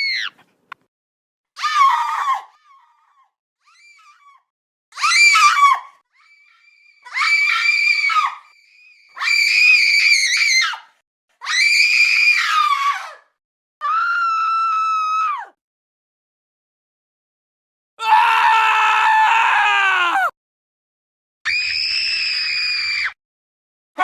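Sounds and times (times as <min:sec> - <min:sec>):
high-pitched human screams: 0:05.0 - 0:10.8, 0:18.0 - 0:20.3, 0:21.5 - 0:23.2.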